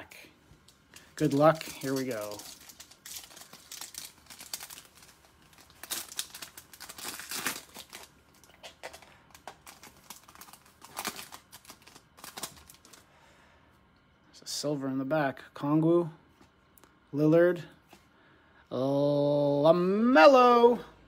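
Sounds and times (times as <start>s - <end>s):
foil wrapper tearing and crinkling: 1.0s - 13.0s.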